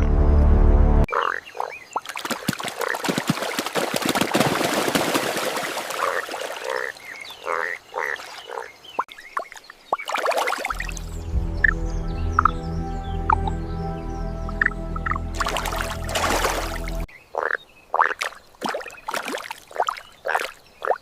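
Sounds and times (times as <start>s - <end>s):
bullfrogs croaking: 1.1s - 1.8s, 6.0s - 8.8s, 17.1s - 18.3s.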